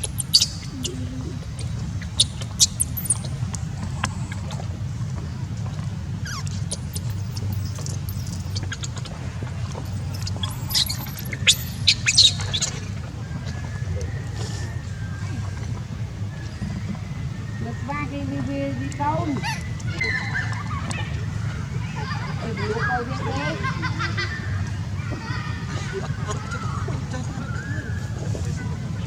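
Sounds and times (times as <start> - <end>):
baby monkey squeaking cries: 0.0 - 3.5, 6.2 - 8.9, 9.8 - 12.8
steady low hum: 0.0 - 19.9.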